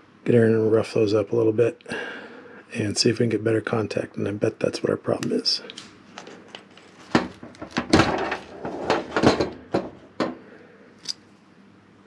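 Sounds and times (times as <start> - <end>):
objects knocking and clattering: 6.2 - 10.4.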